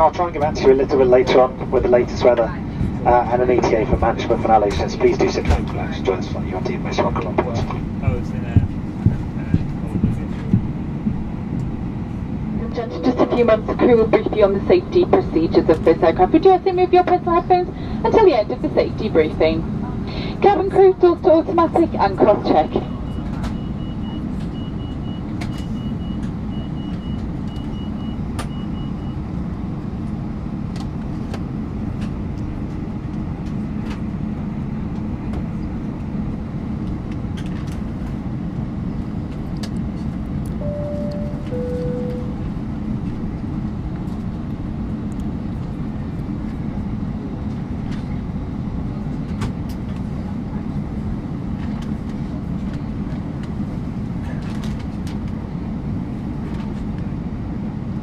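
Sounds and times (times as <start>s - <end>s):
cabin air conditioning rumble: 0.0s - 58.0s
short high beeps: 40.6s - 42.5s
two-tone cabin chime: 40.6s - 42.6s.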